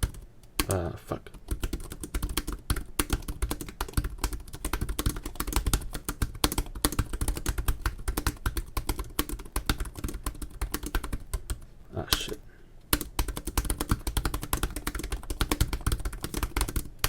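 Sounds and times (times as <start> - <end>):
laptop keyboard typing: 0.0 - 17.0.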